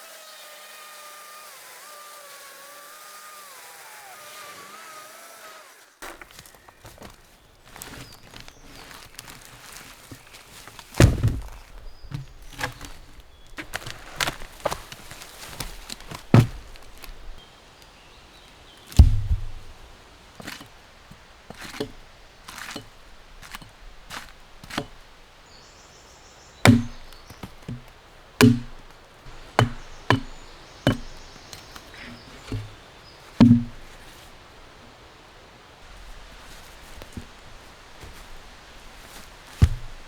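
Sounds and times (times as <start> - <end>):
wood being chopped: 6.0 - 17.4, 18.8 - 25.4, 26.6 - 34.2, 36.1 - 40.0.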